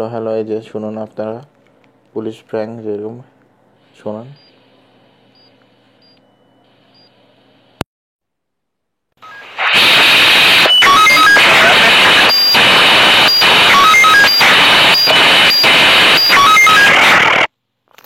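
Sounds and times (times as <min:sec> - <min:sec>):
radio static: 0:09.2 - 0:17.5.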